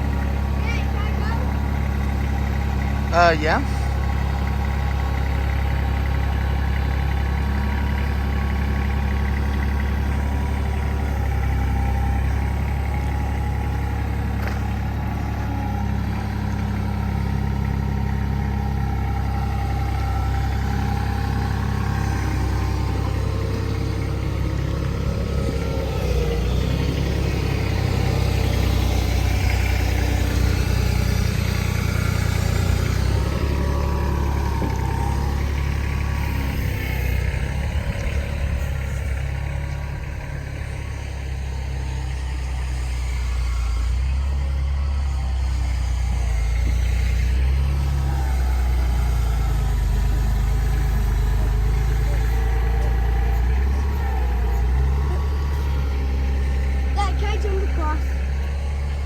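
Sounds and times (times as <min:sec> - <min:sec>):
engine running at low revs: 0:00.0 - 0:59.0.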